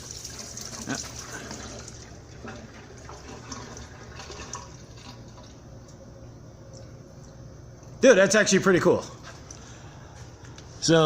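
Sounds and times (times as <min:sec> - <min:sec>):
oil trickling into drain pan: 0:00.0 - 0:05.6.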